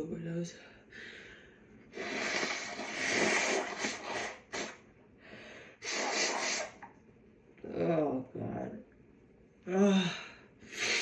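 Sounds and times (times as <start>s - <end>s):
woman blowing her nose: 1.9s - 4.8s, 5.8s - 6.8s, 10.7s - 11.0s.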